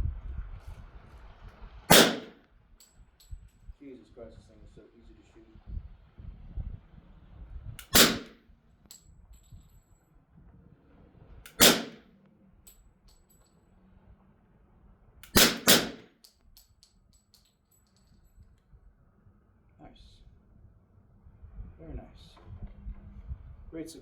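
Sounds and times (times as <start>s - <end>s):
muffled pistol shots: 1.9s - 2.4s, 7.8s - 8.4s, 11.5s - 12.0s, 15.2s - 16.1s.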